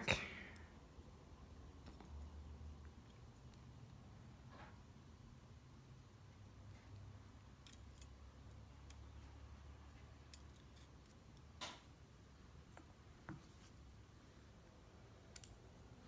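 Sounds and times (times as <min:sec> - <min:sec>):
small metal clicks of lock parts: 0:07.6 - 0:09.3, 0:09.9 - 0:11.9, 0:15.3 - 0:15.6.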